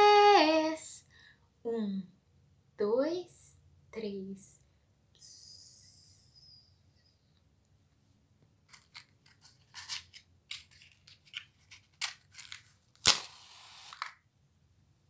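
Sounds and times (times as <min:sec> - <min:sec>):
rustling and clicking of handling: 0:08.4 - 0:13.2.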